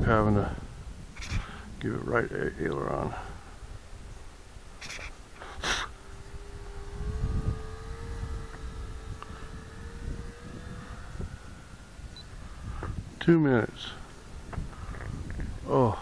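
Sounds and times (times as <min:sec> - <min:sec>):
model plane motor whine: 0:04.8 - 0:15.7.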